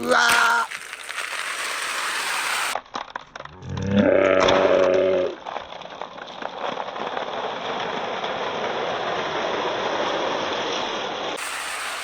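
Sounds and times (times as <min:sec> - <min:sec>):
marbles rattling down wooden run: 0:00.0 - 0:03.5.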